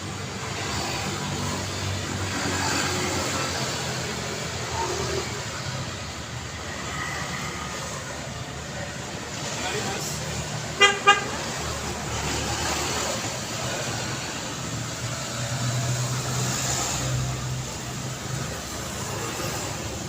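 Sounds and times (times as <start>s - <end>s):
passing cars: 0.0s - 20.0s
car horn beep: 10.8s - 11.4s.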